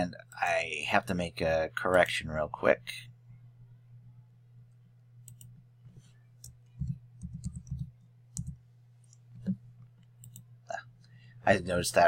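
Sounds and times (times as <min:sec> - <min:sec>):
keyboard and mouse clicks: 0:05.2 - 0:05.5, 0:06.4 - 0:10.5.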